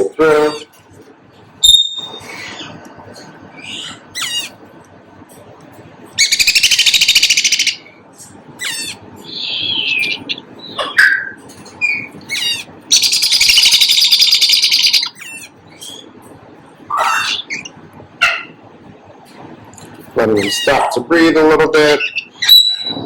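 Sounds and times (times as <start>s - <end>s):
high chirps: 1.6s - 2.8s, 6.2s - 7.9s, 8.6s - 16.2s
parrot chick chattering calls: 3.6s - 4.6s, 6.2s - 7.8s, 8.6s - 16.1s.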